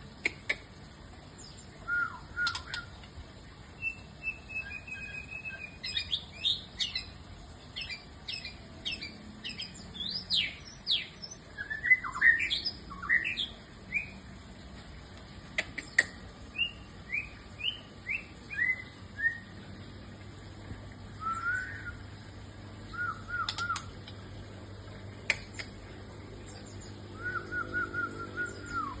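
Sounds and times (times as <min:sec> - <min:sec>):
bird chirping: 0:01.4 - 0:03.0, 0:03.8 - 0:14.2, 0:15.6 - 0:19.6, 0:22.9 - 0:24.2, 0:26.4 - 0:29.0
sharp clicks: 0:23.4 - 0:24.2, 0:25.2 - 0:25.8.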